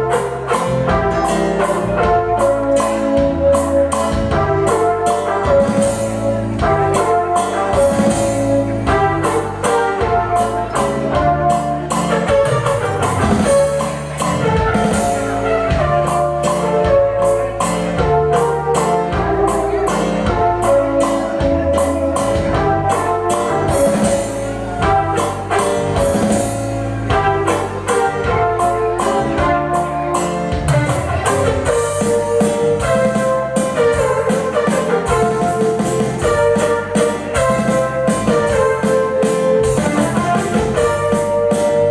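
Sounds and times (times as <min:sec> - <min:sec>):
music with steady beat: 0:00.0 - 0:41.9.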